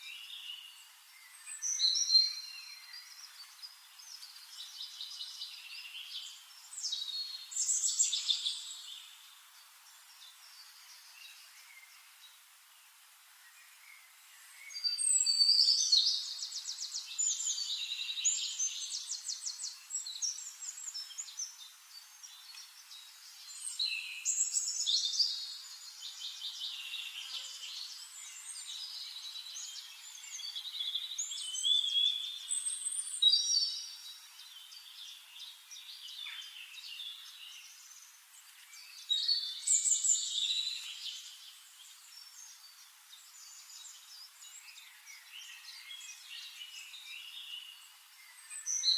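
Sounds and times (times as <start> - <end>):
faint bird chirps: 0.0 - 48.9.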